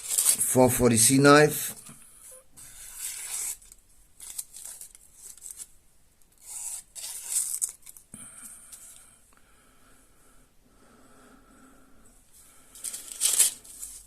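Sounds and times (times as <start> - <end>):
knife scraping through material: 6.4 - 7.8.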